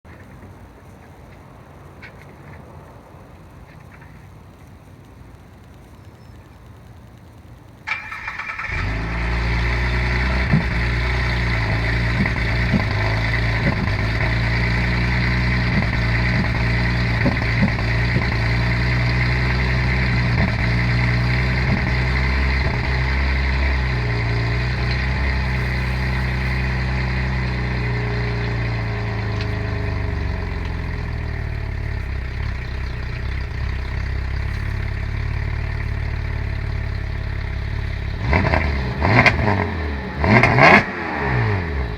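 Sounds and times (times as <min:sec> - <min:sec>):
exhaust pops: 0:03.7 - 0:41.9
car engine starting and idling: 0:07.8 - 0:41.9.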